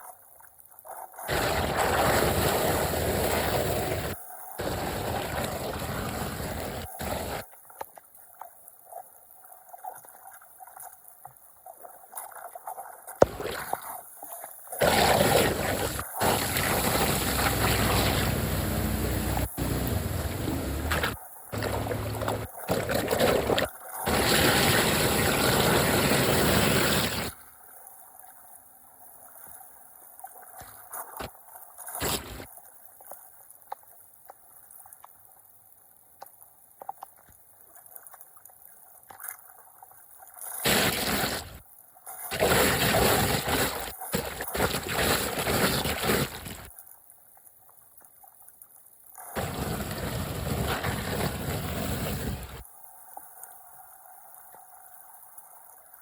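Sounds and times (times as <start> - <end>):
water gurgling into drain: 1.2 - 7.4, 13.2 - 13.9, 14.7 - 27.4, 42.3 - 46.7, 49.2 - 52.6
water trickling: 15.3 - 25.6.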